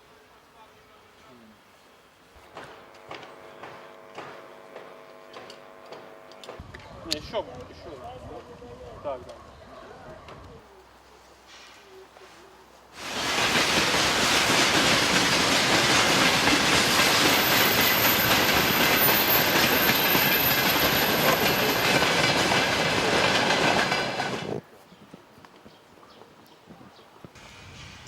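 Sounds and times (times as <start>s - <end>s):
train wheels on rails: 2.4s - 6.7s, 13.0s - 24.6s, 27.4s - 28.0s
high wheel squeal: 17.0s - 22.1s.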